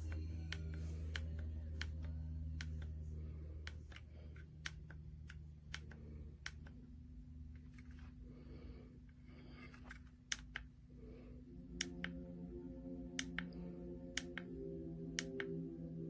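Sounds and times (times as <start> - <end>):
heater fan hum: 0.0 - 16.0
sharp clicks: 3.6 - 6.9, 9.6 - 10.8, 11.7 - 12.4, 13.1 - 15.7.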